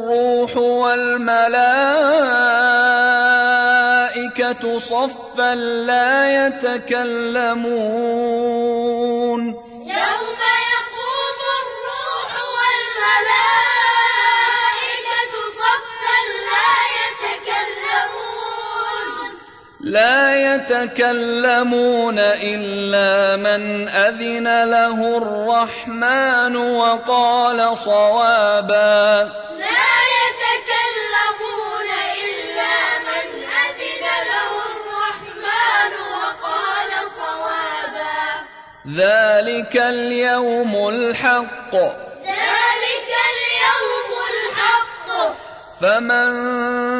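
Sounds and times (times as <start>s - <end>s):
children reciting melodically: 9.3s - 21.2s, 28.8s - 38.6s, 40.9s - 46.1s.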